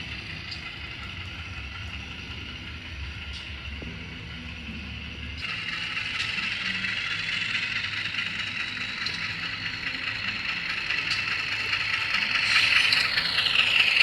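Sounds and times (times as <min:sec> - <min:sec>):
diesel engine sound from small speaker: 0:00.0 - 0:14.0.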